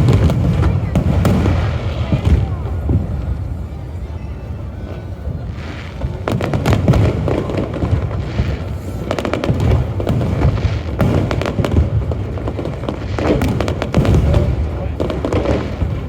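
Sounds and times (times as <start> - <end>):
fireworks bangs and crackles: 0.0 - 16.0.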